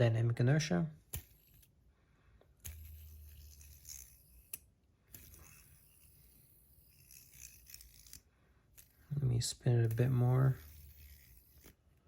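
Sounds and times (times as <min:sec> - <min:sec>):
fidget spinner clicks: 0:02.6 - 0:08.2.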